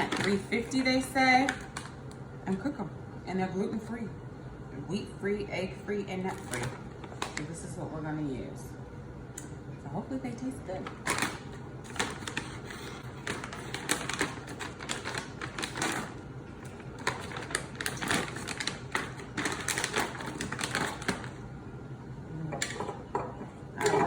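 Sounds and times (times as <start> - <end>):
kitchen items clicking and clattering: 0.0 - 1.9, 10.8 - 21.4, 22.5 - 24.0.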